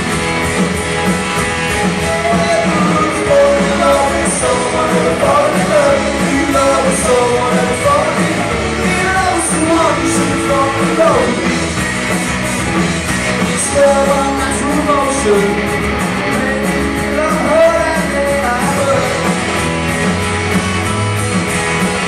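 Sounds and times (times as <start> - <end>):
live rock band playing: 0.0 - 22.0
person singing: 1.8 - 11.6, 13.4 - 19.5.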